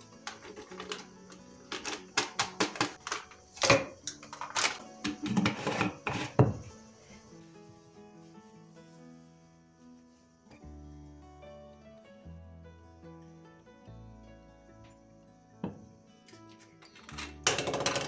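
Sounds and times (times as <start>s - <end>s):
knocks and clatters of objects: 0.0s - 6.8s, 16.5s - 18.0s
soft background music: 0.0s - 18.0s.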